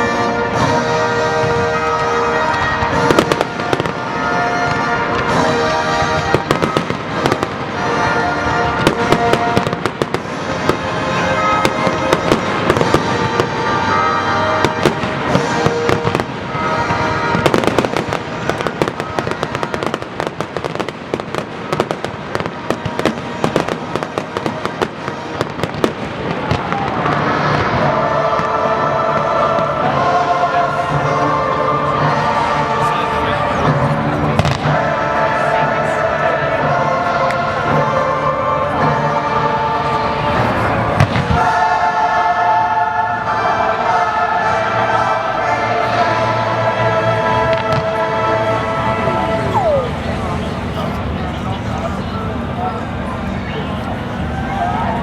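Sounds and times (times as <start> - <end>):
music playing: 0.0 - 55.0
fireworks exploding and crackling: 0.1 - 28.6, 32.9 - 34.9, 40.3 - 41.7, 47.4 - 48.6.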